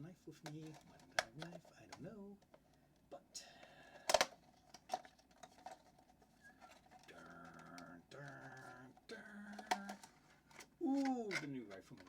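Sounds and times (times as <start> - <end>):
packaging clicks and crinkles: 3.9 - 12.0.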